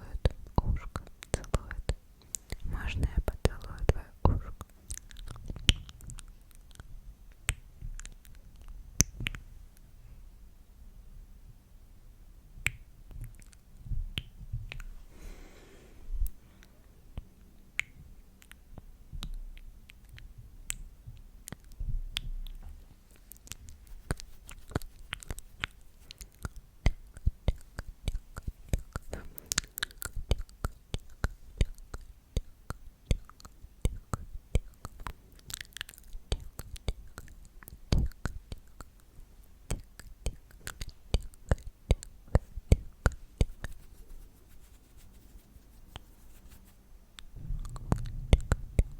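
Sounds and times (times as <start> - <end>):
person whispering: 0.0 - 4.7
wet mouth clicks and smacks: 0.2 - 9.5, 12.6 - 15.0, 16.2 - 44.0, 45.9 - 48.9
soft low thumps: 47.3 - 48.9.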